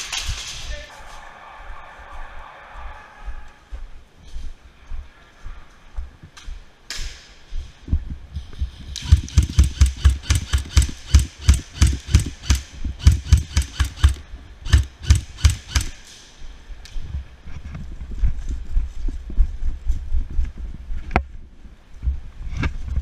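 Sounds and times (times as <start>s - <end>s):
gear rattling: 8.9s - 16.0s.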